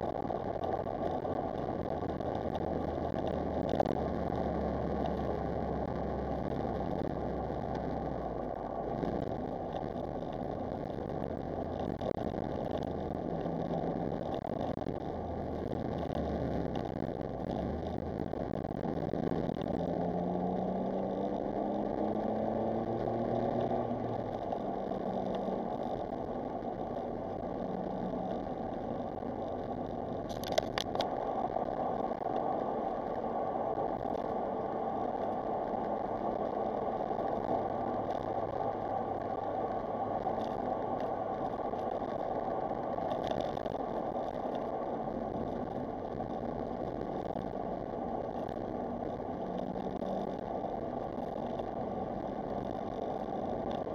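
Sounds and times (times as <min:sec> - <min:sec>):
road noise: 0:00.0 - 0:53.9
car engine accelerating: 0:15.2 - 0:31.4.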